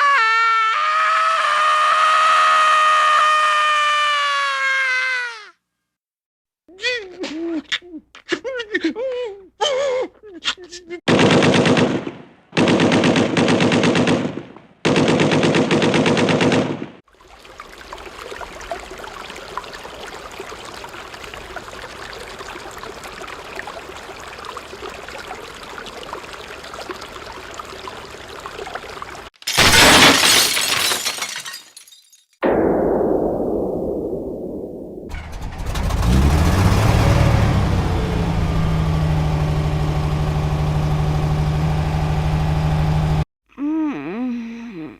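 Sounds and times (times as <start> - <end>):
automatic gunfire: 11.1 - 17.0.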